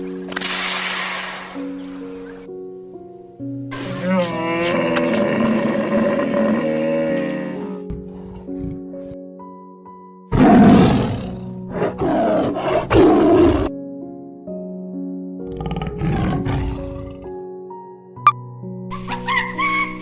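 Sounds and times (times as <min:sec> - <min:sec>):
light background music: 0:00.0 - 0:20.0
big cat roaring: 0:03.8 - 0:09.0, 0:10.3 - 0:13.7, 0:15.4 - 0:17.3.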